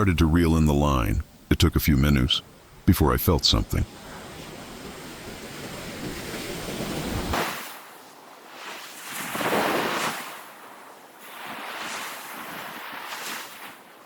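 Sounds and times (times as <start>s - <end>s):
wind rumble on microphone: 3.8s - 7.4s
surf breaking on beach: 3.8s - 13.9s.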